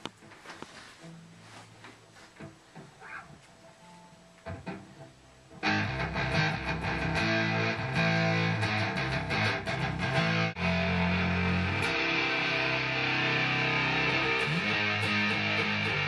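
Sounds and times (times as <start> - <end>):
electric guitar riff through amplifier: 5.6 - 16.0.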